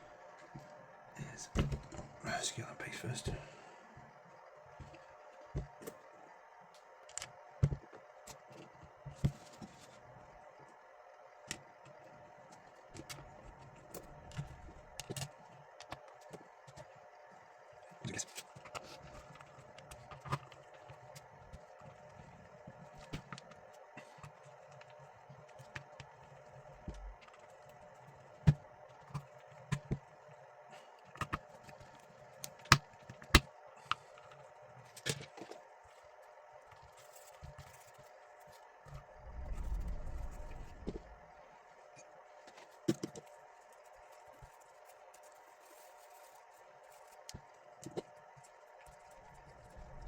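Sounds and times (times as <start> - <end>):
faint steady hum: 0.0 - 50.0
short low rumble: 39.2 - 41.2.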